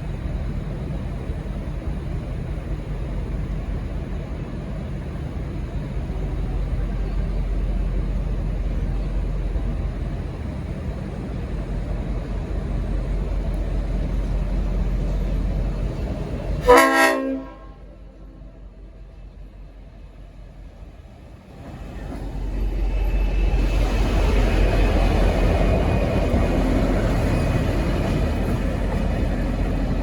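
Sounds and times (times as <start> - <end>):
diesel locomotive engine rumbling: 0.0 - 30.0
air horn chord blast: 16.7 - 17.9.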